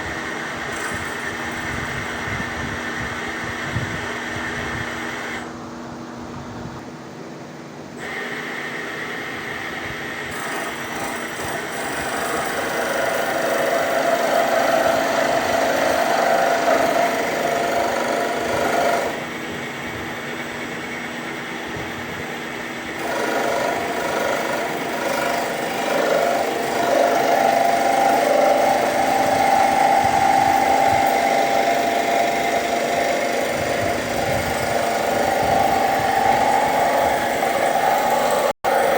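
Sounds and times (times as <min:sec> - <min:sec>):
cnc machine humming: 0:08.0 - 0:38.9.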